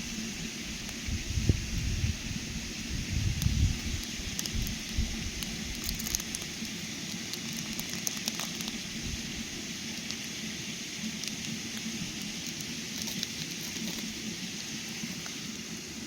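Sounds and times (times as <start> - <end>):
wood fire crackling: 3.3 - 10.4, 11.0 - 14.3.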